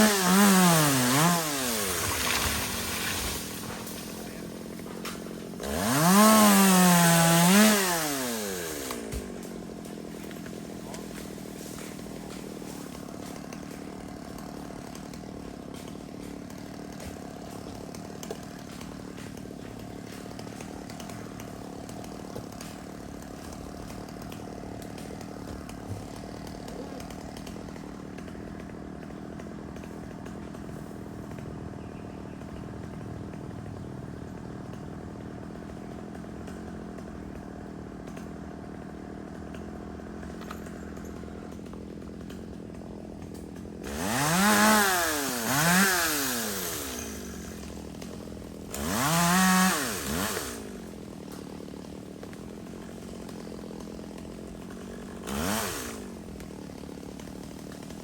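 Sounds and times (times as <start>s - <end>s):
chainsaw cutting tree trunk: 0.0s - 58.0s.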